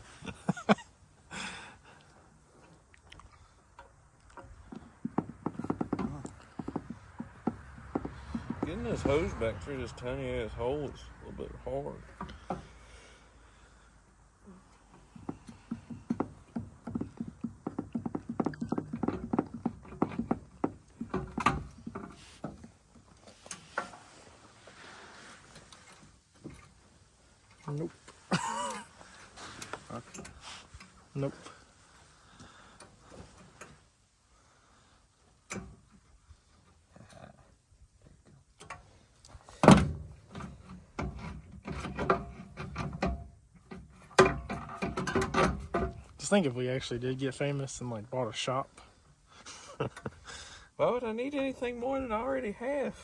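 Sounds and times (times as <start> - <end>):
rubber hose knocking and rattling: 3.7 - 10.1, 14.8 - 30.9, 38.6 - 46.3
hose scraping and rubbing: 21.6 - 28.3.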